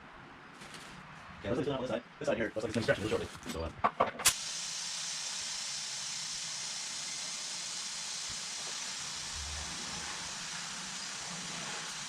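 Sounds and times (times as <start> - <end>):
valve click: 4.2 - 9.3
compressed air hissing: 4.3 - 12.0.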